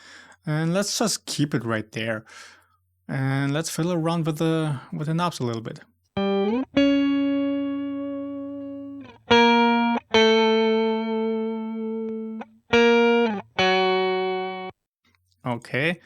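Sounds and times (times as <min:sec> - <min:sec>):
clean electric guitar notes: 0:06.2 - 0:14.8.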